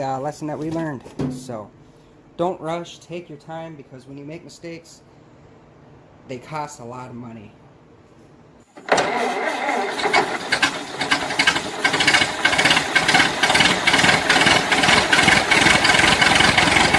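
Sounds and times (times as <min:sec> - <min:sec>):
engine running with uneven pulsing: 0:09.0 - 0:16.9.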